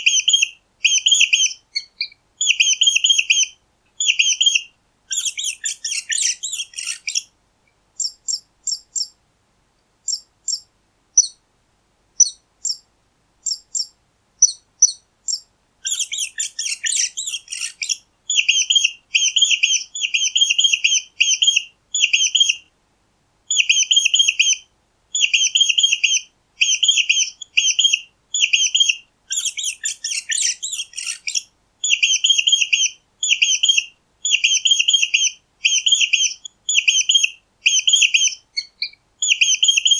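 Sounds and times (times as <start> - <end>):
mice squeaking: 0.1 - 7.2, 13.5 - 22.6, 25.2 - 39.9.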